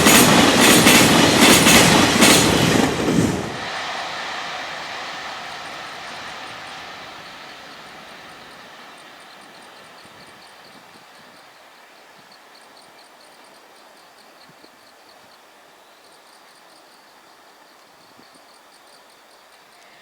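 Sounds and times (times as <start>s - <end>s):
distant freight train: 0.0s - 13.1s
night insects chirping: 0.0s - 20.0s.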